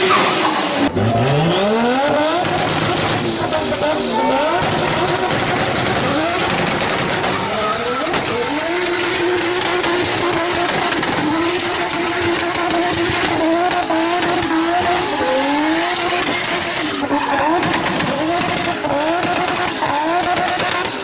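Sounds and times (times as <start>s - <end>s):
car engine running hard: 0.0s - 21.0s
high-pitched turbo whistle: 11.3s - 20.7s.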